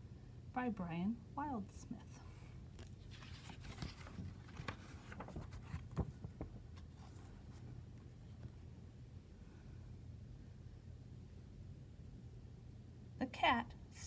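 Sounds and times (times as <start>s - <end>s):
paper rustling: 2.6s - 8.7s.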